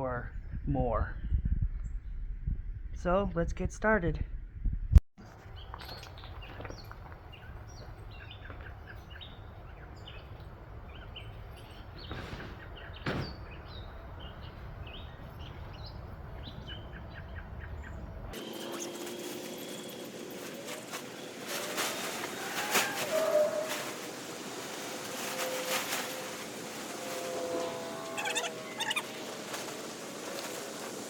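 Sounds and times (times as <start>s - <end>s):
low rumble: 0.2s - 5.0s
small birds chirping: 5.4s - 19.0s, 28.2s - 29.2s
outdoor background hiss: 18.4s - 31.0s.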